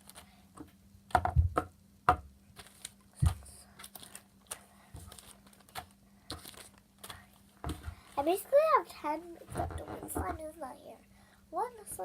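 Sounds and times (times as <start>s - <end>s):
containers knocking on a table: 1.2s - 2.3s.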